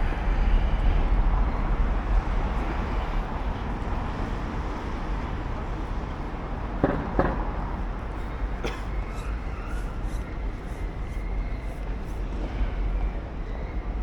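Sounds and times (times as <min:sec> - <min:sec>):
traffic rumble: 0:00.0 - 0:14.0
short knocks: 0:06.8 - 0:07.6.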